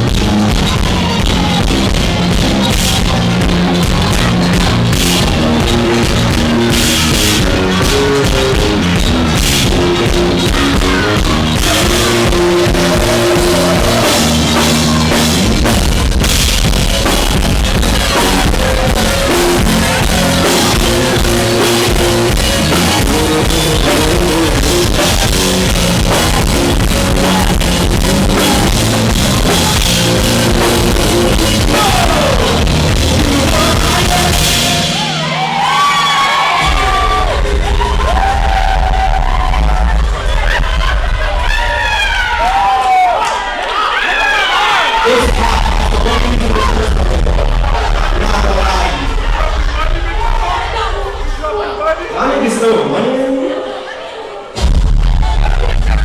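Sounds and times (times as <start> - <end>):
live rock band playing: 0.0 - 41.3.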